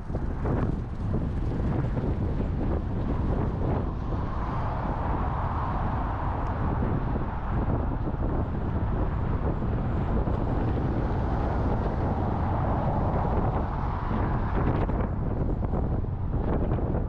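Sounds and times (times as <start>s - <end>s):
wind blowing across microphone: 0.0s - 17.0s.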